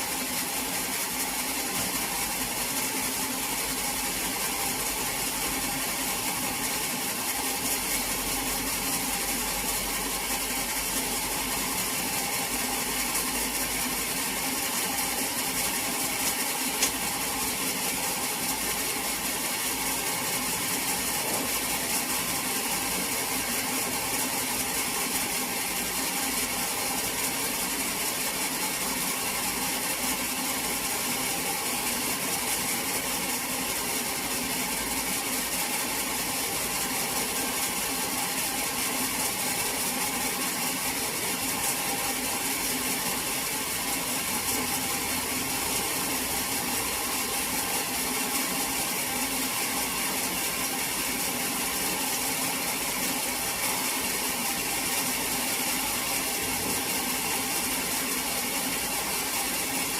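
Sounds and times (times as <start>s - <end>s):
sawmill machinery drone: 39.4s - 59.9s.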